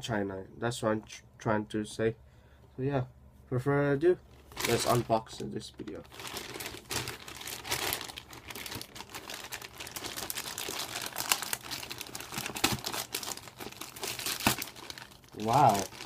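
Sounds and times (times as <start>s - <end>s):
package wrapping crinkling and tearing: 4.4s - 5.1s, 6.0s - 16.0s.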